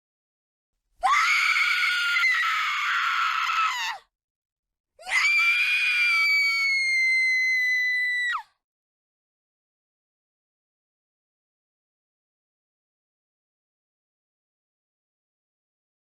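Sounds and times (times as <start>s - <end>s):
woman screaming: 1.0s - 4.0s, 5.0s - 8.4s.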